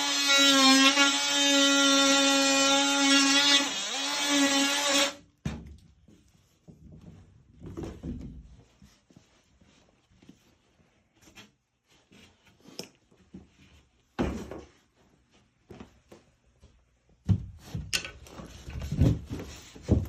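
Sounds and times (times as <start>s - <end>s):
drywall knocks scrapes and thumps: 13.3s - 15.0s, 17.2s - 20.0s.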